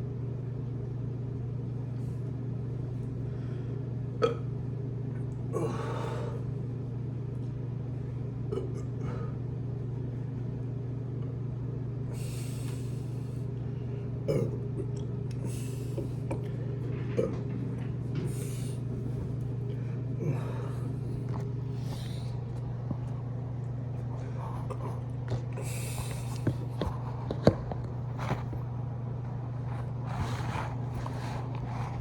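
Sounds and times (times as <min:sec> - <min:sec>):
low hum: 0:00.0 - 0:32.0
person burping: 0:04.2 - 0:04.5, 0:08.5 - 0:09.3, 0:14.3 - 0:15.1, 0:17.1 - 0:17.5
person breathing: 0:05.6 - 0:06.5, 0:12.1 - 0:14.1, 0:15.4 - 0:16.5, 0:18.2 - 0:22.6, 0:24.1 - 0:26.9.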